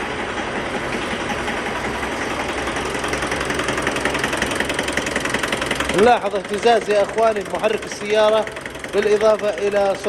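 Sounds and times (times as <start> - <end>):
diesel engine idling roughly: 0.0 - 10.0.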